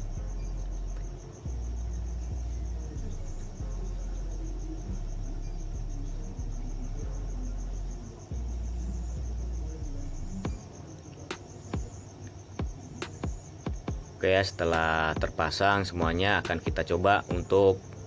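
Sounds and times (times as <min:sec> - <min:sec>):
low rumble: 0:00.0 - 0:10.6
high-pitched insect chirping: 0:00.0 - 0:18.0.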